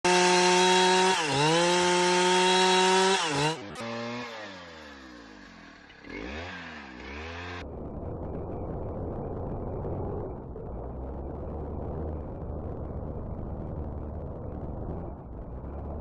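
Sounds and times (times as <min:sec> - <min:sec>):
chainsaw cutting wood: 0:00.0 - 0:07.6.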